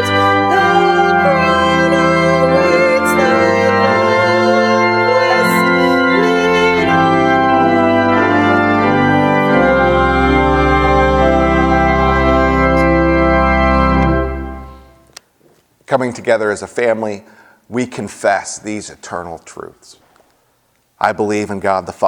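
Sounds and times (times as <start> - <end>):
deep organ bass note: 0.0 - 15.0
organ playing slow chords: 0.0 - 15.2.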